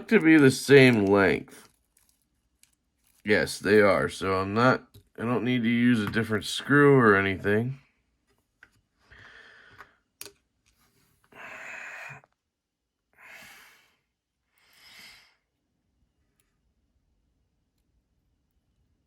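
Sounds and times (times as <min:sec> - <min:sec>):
person breathing out heavily: 0:11.3 - 0:12.3.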